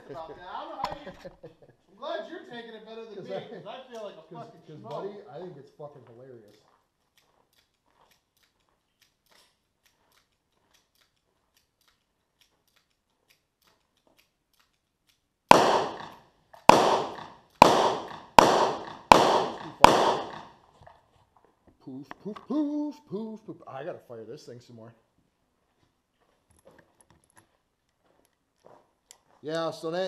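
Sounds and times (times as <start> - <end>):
handgun shots: 15.5 - 20.6.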